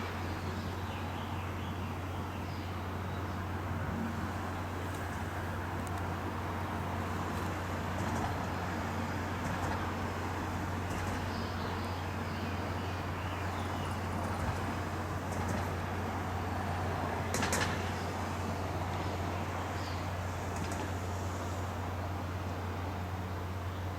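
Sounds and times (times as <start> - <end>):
diesel engine humming: 0.0 - 23.9.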